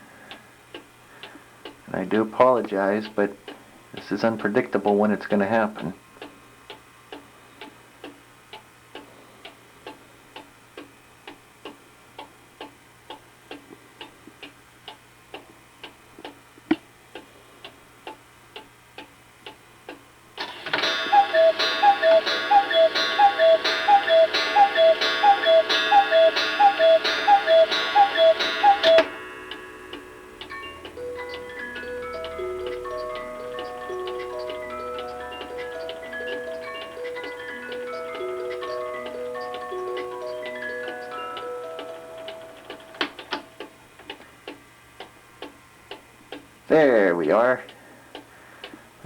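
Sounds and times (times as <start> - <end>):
clock ticking: 0.3 - 48.8
clock strike ringing: 20.4 - 43.8
two-note cuckoo call: 20.7 - 43.7.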